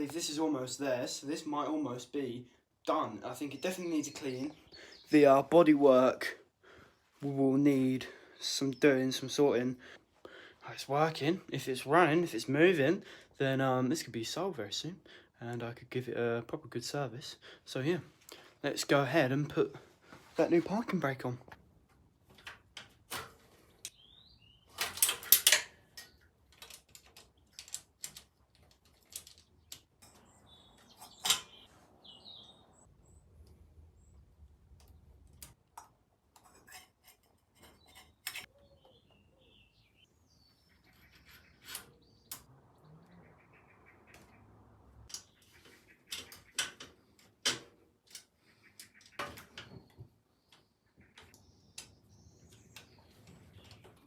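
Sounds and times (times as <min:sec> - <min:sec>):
hand tools clicking and knocking: 0:24.7 - 0:31.6, 0:34.8 - 0:39.0, 0:45.1 - 0:54.0.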